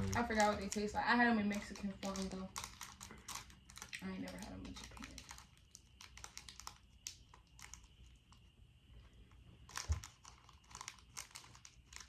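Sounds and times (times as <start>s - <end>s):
snack packaging crinkling: 0.0s - 12.0s
packaging rustle and bump: 1.6s - 7.9s, 9.6s - 12.0s.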